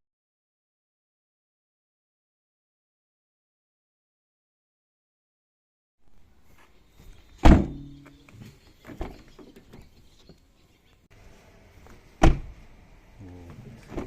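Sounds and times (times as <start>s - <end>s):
car door slamming: 7.4s - 8.0s, 12.2s - 12.6s.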